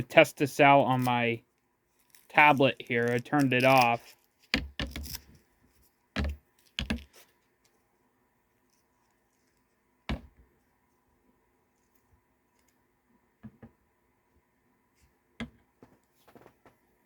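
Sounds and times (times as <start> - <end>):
clicks and knocks handling cable: 3.1 - 5.4, 6.2 - 7.3.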